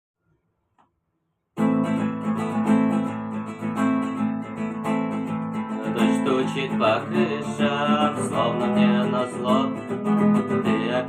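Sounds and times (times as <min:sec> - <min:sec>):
acoustic guitar strumming: 0:01.6 - 0:11.0.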